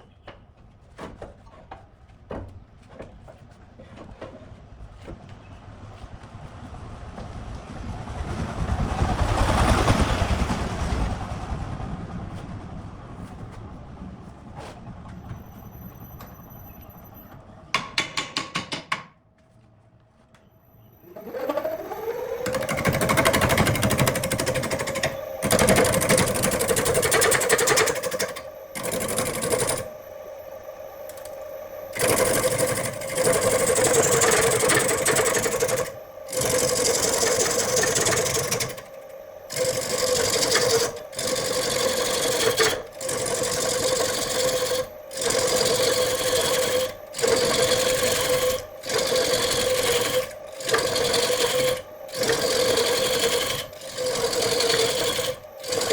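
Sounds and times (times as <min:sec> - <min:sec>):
power tool whining on wood: 0:21.0 - 0:55.9.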